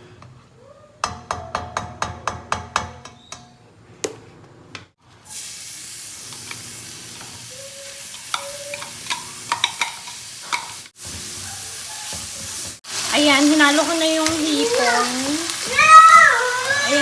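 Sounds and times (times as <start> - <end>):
shrimp sizzling in hot oil: 5.2 - 17.0.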